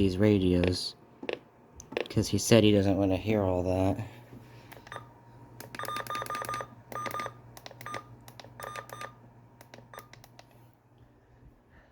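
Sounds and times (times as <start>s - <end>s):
electronic key beeps with clicks: 4.8s - 10.4s.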